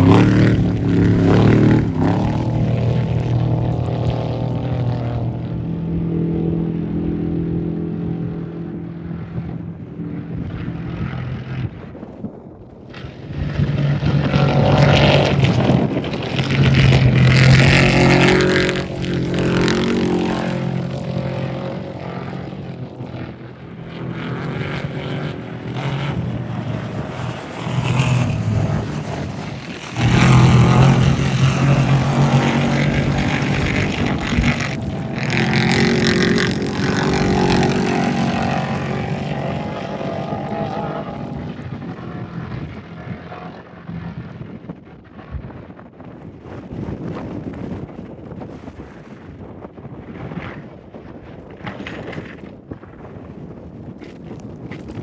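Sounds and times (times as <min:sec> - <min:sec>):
race trucks passing at speed: 0:00.0 - 0:07.9, 0:12.9 - 0:44.2.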